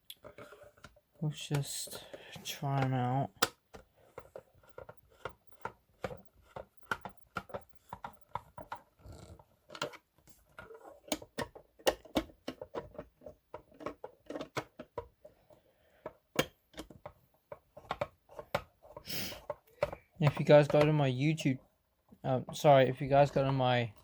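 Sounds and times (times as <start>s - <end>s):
irregular clicking and tapping: 0.0s - 9.0s.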